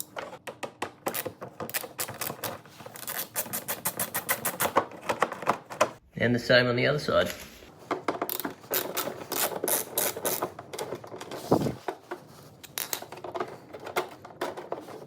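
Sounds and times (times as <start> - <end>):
hand tool clicking and rattling: 8.1 - 11.2.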